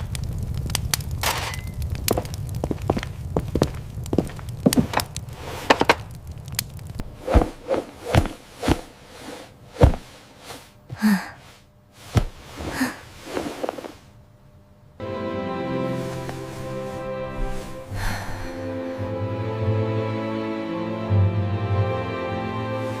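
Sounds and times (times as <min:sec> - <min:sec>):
low rumble: 0:00.0 - 0:10.2
irregular knocks and thuds: 0:07.0 - 0:09.0, 0:09.7 - 0:10.2, 0:12.0 - 0:12.8.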